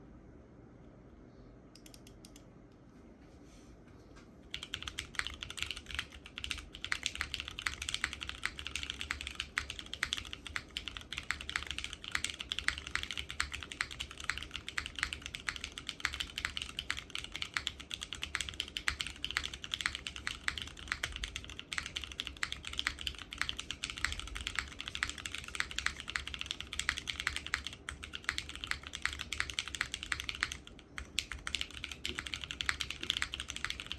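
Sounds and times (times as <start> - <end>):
fast mechanical keyboard typing: 4.5 - 33.9.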